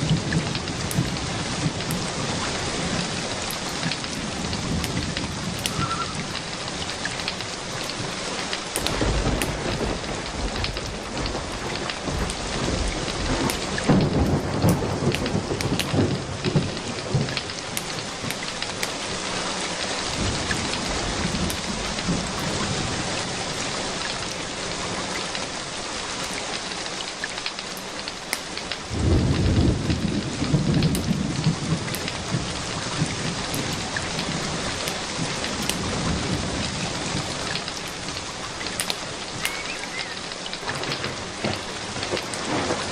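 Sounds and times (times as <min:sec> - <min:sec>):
rolling thunder: 0:00.0 - 0:08.2, 0:08.8 - 0:18.3, 0:20.1 - 0:24.4, 0:28.8 - 0:42.9
steady rain: 0:00.0 - 0:42.9.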